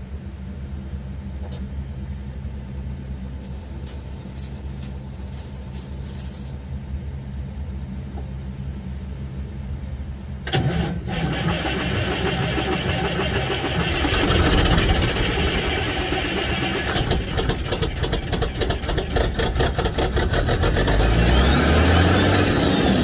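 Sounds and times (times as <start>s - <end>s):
hissing burst: 3.4s - 6.6s
diesel engine cranking and starting: 10.5s - 17.0s.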